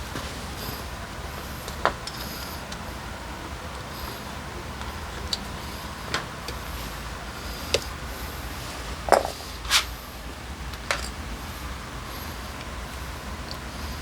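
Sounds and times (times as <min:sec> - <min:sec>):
hand tools clinking: 0:09.1 - 0:09.9.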